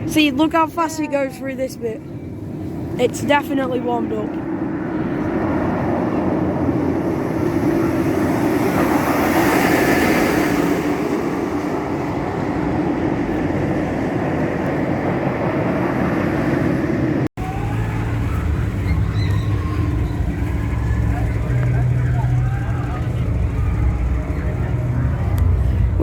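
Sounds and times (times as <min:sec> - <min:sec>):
roller coaster rumbling on track: 0:00.0 - 0:26.0
low rumble: 0:03.7 - 0:26.0.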